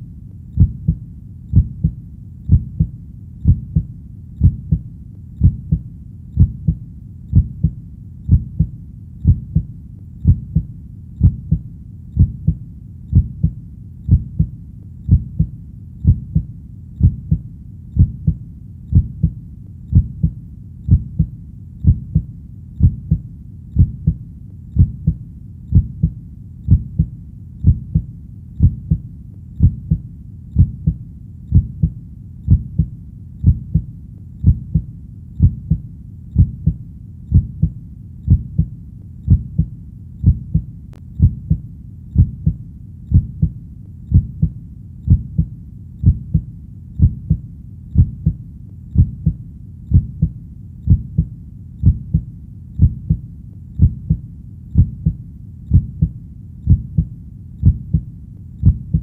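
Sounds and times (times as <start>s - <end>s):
heartbeat thumps: 0.0s - 59.0s.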